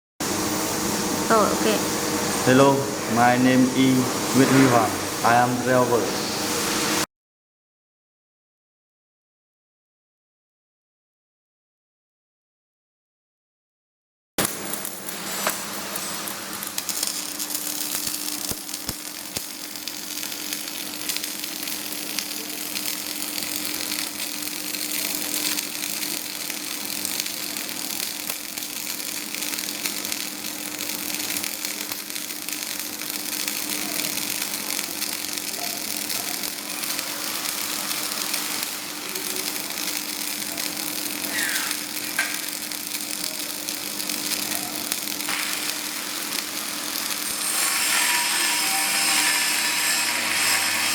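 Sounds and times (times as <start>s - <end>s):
welding arc crackling: 0.2s - 7.1s, 14.4s - 50.9s.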